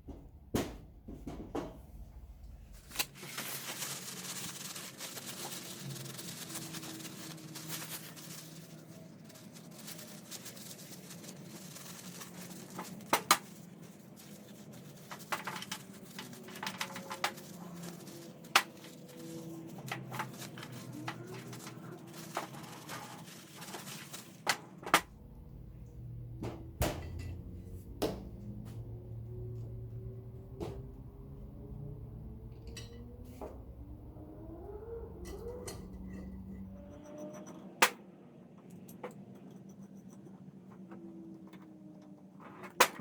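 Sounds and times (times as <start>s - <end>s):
tools being handled: 2.9s - 25.1s
low steady hum: 24.1s - 37.4s.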